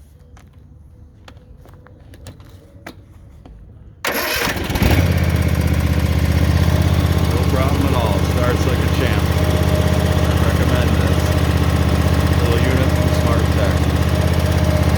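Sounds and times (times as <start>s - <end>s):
mower engine starting and running: 4.0s - 14.9s.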